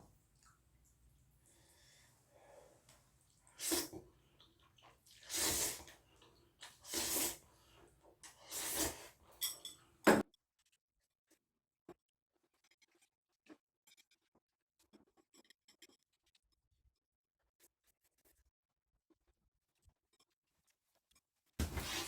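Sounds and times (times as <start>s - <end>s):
person making sneeze-like bursts: 3.5s - 4.0s, 5.2s - 6.0s, 6.7s - 7.4s, 8.4s - 9.2s.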